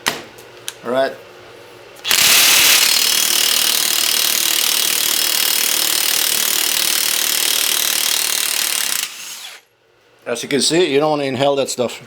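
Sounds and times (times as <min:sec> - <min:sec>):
impact wrench hammering: 0:02.1 - 0:09.6.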